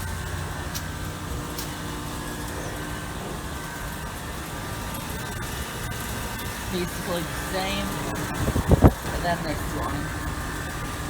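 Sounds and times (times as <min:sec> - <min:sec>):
heat pump humming: 0:00.0 - 0:11.0.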